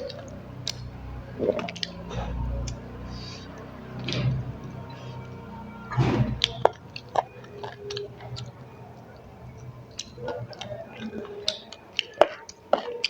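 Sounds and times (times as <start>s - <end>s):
person chewing food: 0.0s - 5.5s, 6.4s - 13.0s.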